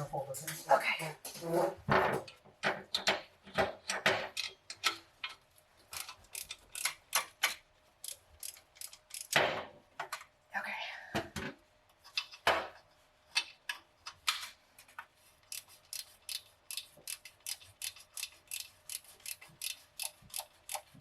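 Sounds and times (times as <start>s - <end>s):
hand ratchet clicking: 5.9s - 9.4s, 15.5s - 21.0s.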